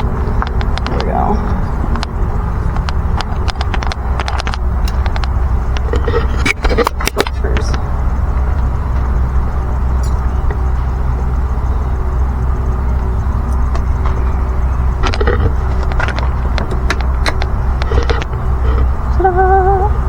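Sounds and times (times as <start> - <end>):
low rumble: 0.0 - 20.0
lock parts clicking and tapping: 2.7 - 7.6, 15.0 - 18.9.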